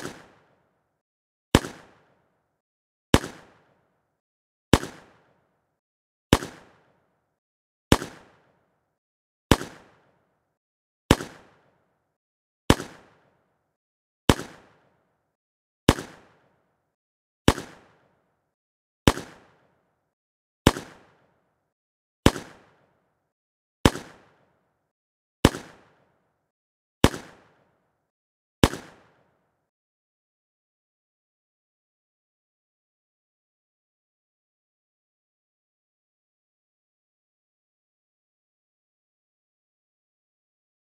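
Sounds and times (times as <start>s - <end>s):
handgun shots: 0.0s - 0.5s, 1.6s - 2.1s, 3.2s - 3.7s, 4.7s - 5.4s, 6.3s - 6.9s, 7.9s - 8.5s, 9.5s - 10.1s, 11.1s - 11.7s, 12.7s - 13.2s, 14.3s - 14.9s, 15.9s - 16.4s, 17.5s - 18.0s, 19.1s - 19.6s, 20.7s - 21.3s, 22.2s - 22.8s, 23.9s - 24.4s, 25.4s - 26.0s, 27.0s - 27.6s, 28.6s - 29.2s.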